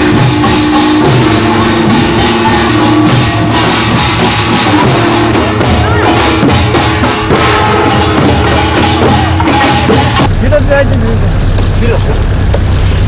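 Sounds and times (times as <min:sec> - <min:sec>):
jangling metal percussion: 0:00.0 - 0:10.4
drums: 0:00.0 - 0:13.0
held pitched notes: 0:00.0 - 0:13.0.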